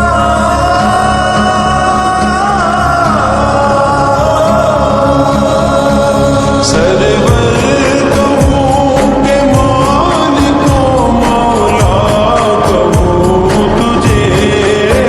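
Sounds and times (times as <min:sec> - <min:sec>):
musical backing: 0:00.0 - 0:15.0
person singing devotional song: 0:00.0 - 0:15.0.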